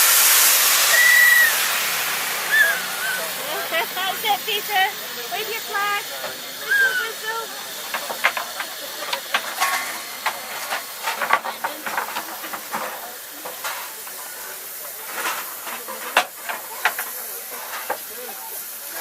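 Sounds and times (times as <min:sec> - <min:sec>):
steam locomotive hissing: 0:00.0 - 0:19.0.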